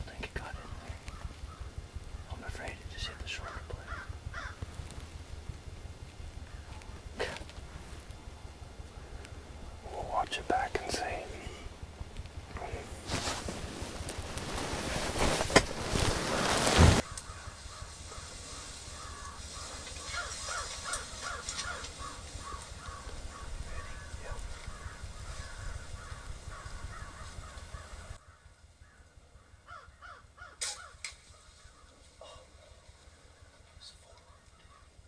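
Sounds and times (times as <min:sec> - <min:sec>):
birds calling: 0:00.3 - 0:35.0
handling rustle: 0:12.1 - 0:25.7.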